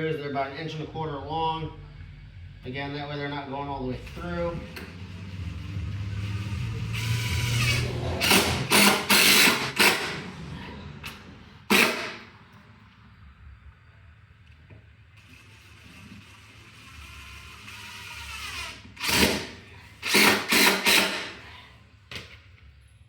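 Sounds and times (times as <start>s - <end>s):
power driver driving screws: 6.4s - 10.2s, 11.7s - 12.3s, 15.7s - 21.4s.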